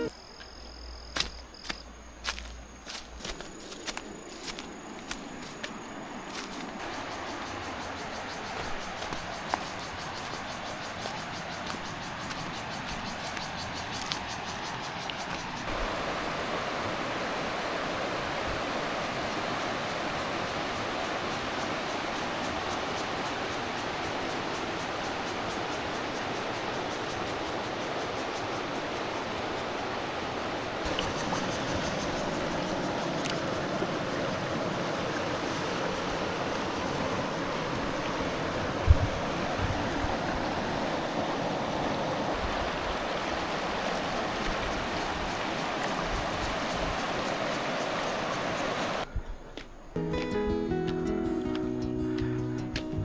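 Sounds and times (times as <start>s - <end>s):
rushing water: 1.2s - 49.1s.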